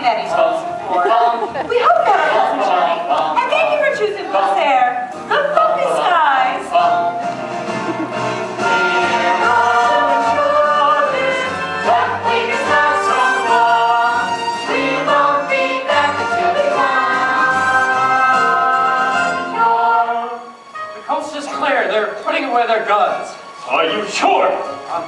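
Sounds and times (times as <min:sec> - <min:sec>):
voices singing together: 0:00.0 - 0:07.4, 0:08.4 - 0:20.7
instrumental accompaniment: 0:00.0 - 0:25.0.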